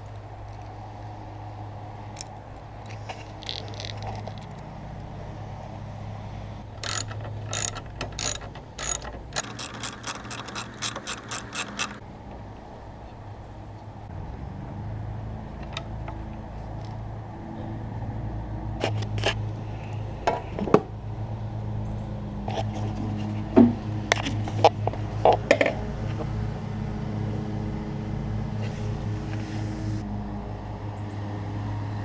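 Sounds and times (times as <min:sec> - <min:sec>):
metal tools clinking on engine parts: 0:06.8 - 0:12.0.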